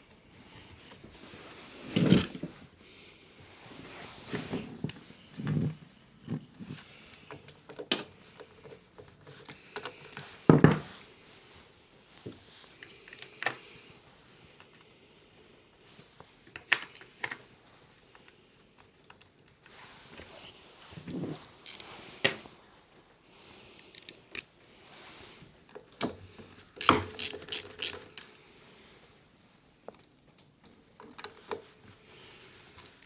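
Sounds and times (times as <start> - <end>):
metal parts clinking: 26.8 - 28.2.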